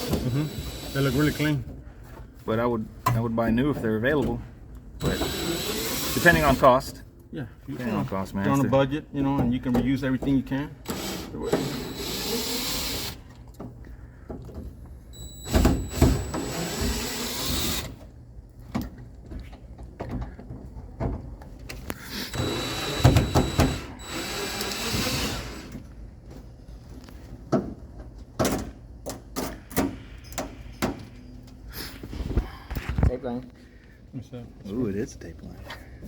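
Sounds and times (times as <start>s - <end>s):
cordless drill running: 0.0s - 1.6s, 5.0s - 6.6s, 10.9s - 13.2s, 15.2s - 18.0s, 22.3s - 25.7s.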